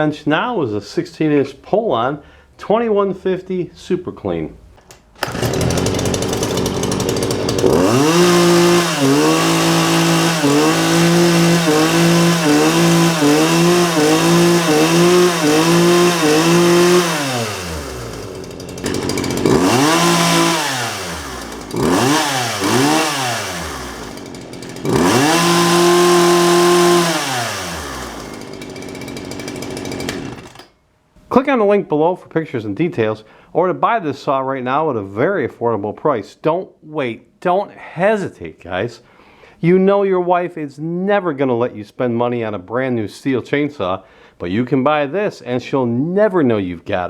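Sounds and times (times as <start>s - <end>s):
chainsaw idling and revving: 5.2s - 30.7s.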